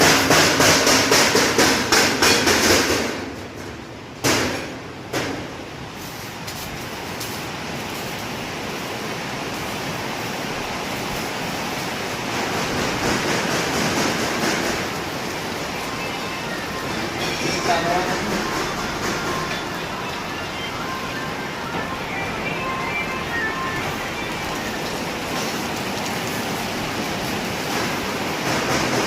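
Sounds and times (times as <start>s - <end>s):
rapid strikes on steel: 0.0s - 3.3s, 4.2s - 5.5s
workshop hiss: 0.0s - 29.0s.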